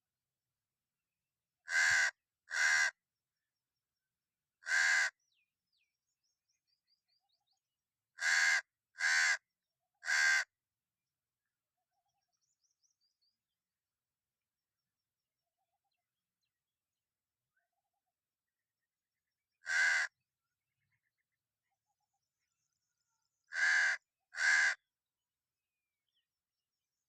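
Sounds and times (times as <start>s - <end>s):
crow cawing: 1.7s - 3.0s, 4.6s - 5.2s, 8.2s - 9.4s, 10.0s - 10.5s, 19.6s - 20.2s, 23.5s - 24.8s.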